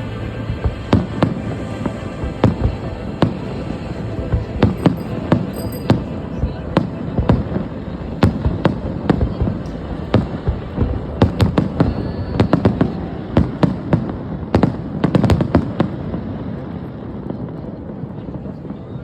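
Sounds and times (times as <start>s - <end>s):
fireworks bangs: 0.6s - 17.6s.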